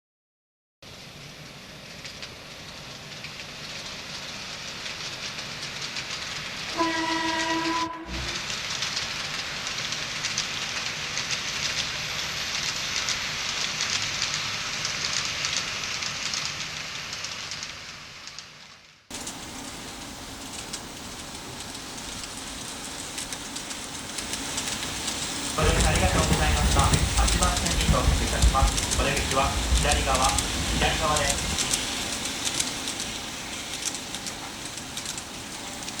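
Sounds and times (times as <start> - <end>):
train horn blast: 6.7 - 8.4
train wheels clattering on rails: 19.1 - 36.0.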